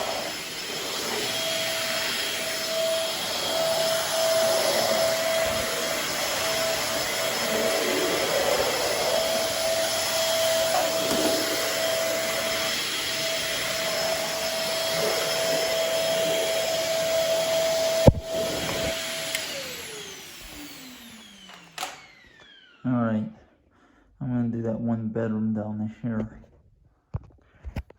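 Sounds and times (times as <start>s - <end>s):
vacuum motor winding down: 0.0s - 22.8s
vacuum cleaner running: 0.0s - 22.9s
sharp knock: 18.1s - 18.4s.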